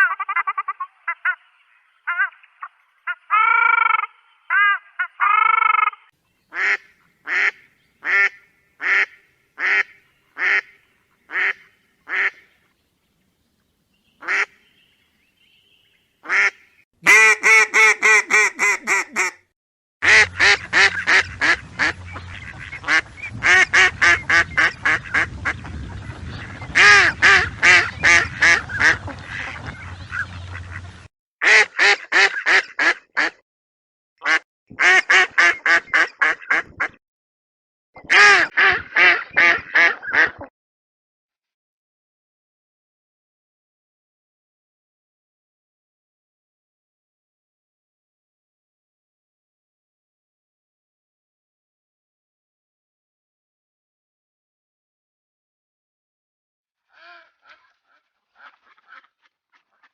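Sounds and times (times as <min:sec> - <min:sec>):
ducks quacking: 0:00.0 - 0:12.5, 0:14.2 - 0:14.6, 0:16.2 - 0:19.4, 0:20.0 - 0:33.4, 0:34.2 - 0:37.0, 0:38.0 - 0:40.5, 0:56.9 - 0:59.9.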